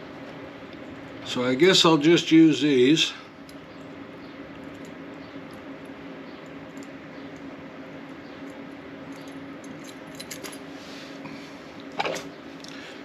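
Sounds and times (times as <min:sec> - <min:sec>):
steady background hum: 0:00.0 - 0:13.0.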